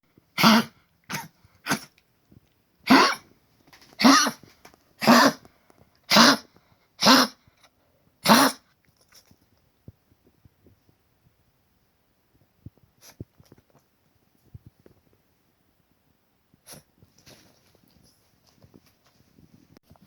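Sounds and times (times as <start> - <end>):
dog coughing: 0.4 - 1.9, 2.9 - 3.2, 4.0 - 4.4, 5.0 - 5.4, 6.1 - 7.4, 8.2 - 8.6.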